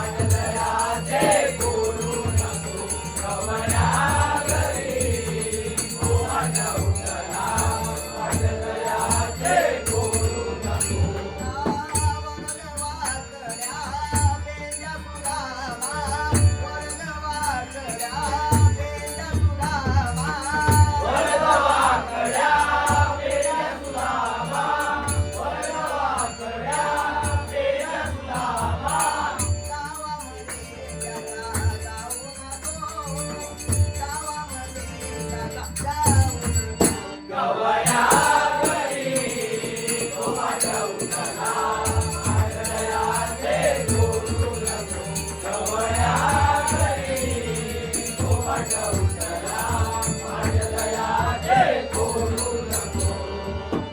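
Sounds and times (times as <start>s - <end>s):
steady drum beat: 0.0s - 12.2s, 37.9s - 53.1s
group devotional singing: 0.0s - 14.0s, 17.5s - 32.7s, 34.9s - 53.9s
jingling hand cymbals: 0.0s - 53.9s.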